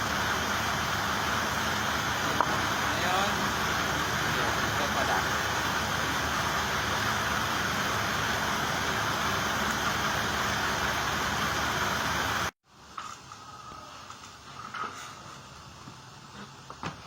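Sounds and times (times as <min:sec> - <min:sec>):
loud mechanical noise: 0:00.0 - 0:12.6.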